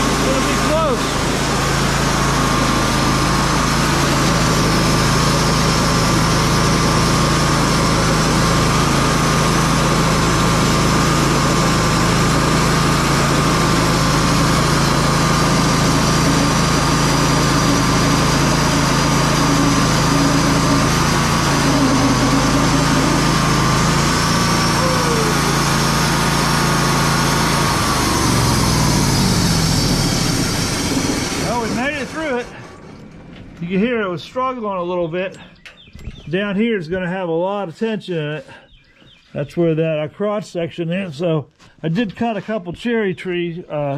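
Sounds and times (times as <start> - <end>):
band blade whining through log: 0.0 - 33.7
sawmill engine running: 0.0 - 37.4.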